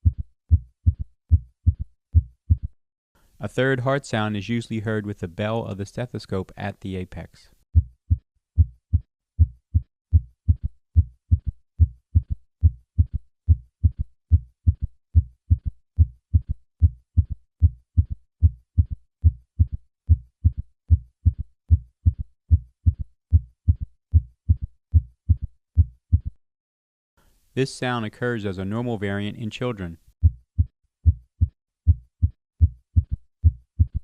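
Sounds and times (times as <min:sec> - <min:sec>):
heart sounds gallop rhythm: 0:00.0 - 0:02.8, 0:07.8 - 0:26.4, 0:30.2 - 0:34.0.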